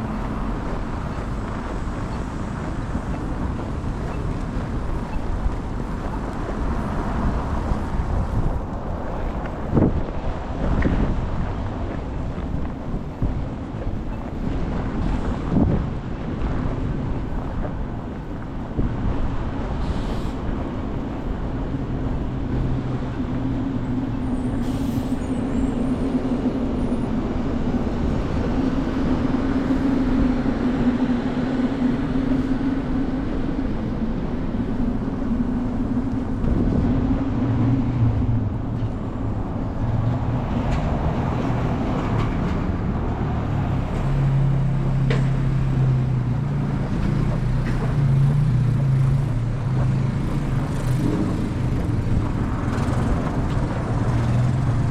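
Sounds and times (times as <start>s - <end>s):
low engine hum: 0.0s - 54.9s
vehicles passing: 0.0s - 54.9s.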